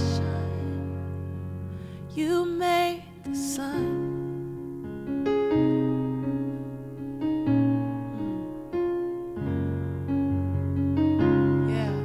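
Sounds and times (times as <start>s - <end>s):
keyboard playing sustained chords: 0.0s - 2.2s.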